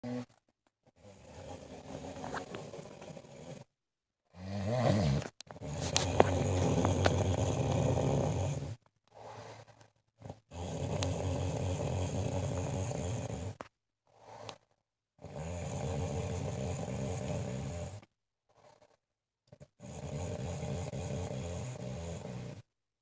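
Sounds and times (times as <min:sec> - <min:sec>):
woman snoring: 0:01.0 - 0:03.7, 0:04.3 - 0:09.6, 0:10.2 - 0:14.6, 0:15.2 - 0:18.1, 0:19.6 - 0:22.7.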